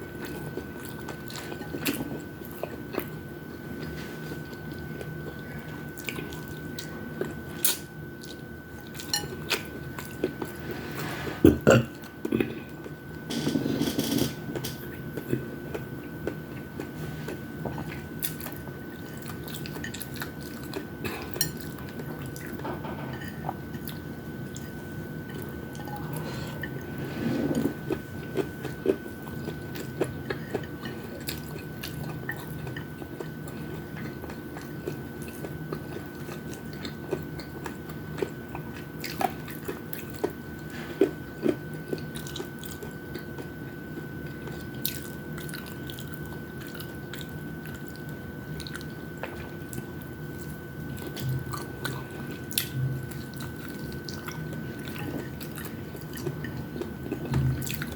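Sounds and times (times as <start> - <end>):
faint steady high whine: 0.0 - 57.9
chewing and biting food: 27.5 - 57.9.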